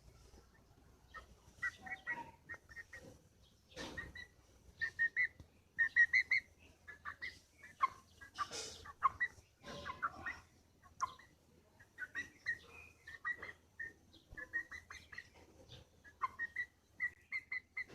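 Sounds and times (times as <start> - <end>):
chicken chirping: 0.0 - 17.9
chicken hissing rasps: 8.2 - 9.3.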